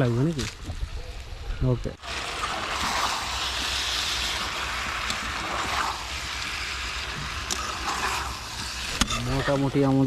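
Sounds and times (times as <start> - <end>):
chicken sizzling in a pan: 2.0 - 10.0.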